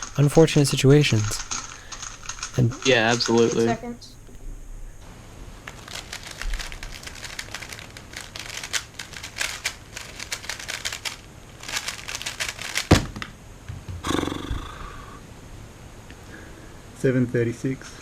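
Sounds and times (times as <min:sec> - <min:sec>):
speed cube plastic clicks: 0:01.1 - 0:03.7, 0:05.7 - 0:13.0.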